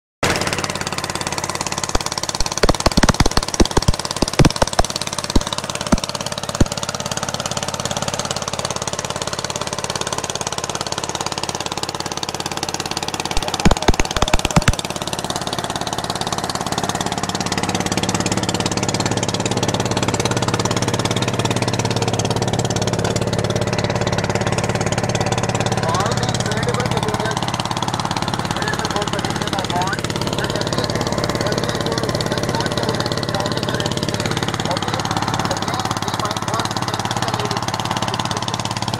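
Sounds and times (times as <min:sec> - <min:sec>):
boat engine running: 0:00.2 - 0:38.9
sharp knocks: 0:01.9 - 0:06.8, 0:13.3 - 0:14.9.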